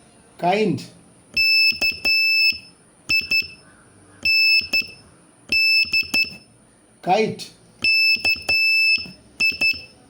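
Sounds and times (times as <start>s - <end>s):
morse code beeps: 1.4s - 3.6s, 4.2s - 6.5s, 7.8s - 10.0s.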